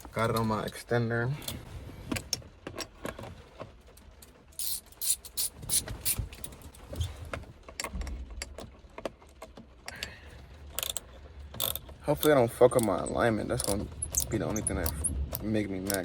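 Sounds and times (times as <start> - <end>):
ratchet clicking: 4.6 - 6.2, 10.7 - 16.0
metal tools scraping: 11.6 - 16.0.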